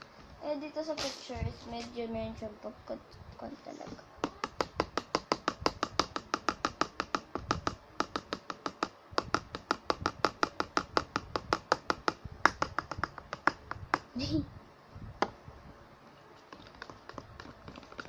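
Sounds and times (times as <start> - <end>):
utensil knocking against container: 4.2 - 14.0.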